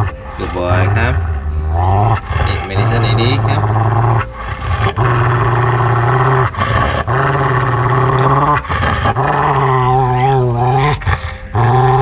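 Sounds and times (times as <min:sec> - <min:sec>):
dog growling: 0:00.0 - 0:12.0.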